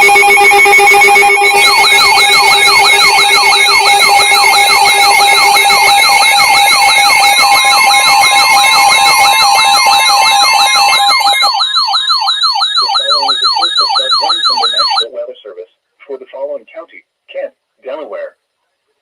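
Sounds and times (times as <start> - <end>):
electronic alarm siren whoop: 0.0 - 15.0
high warbling tone: 0.0 - 15.0
rapid electronic beeping: 0.0 - 15.1.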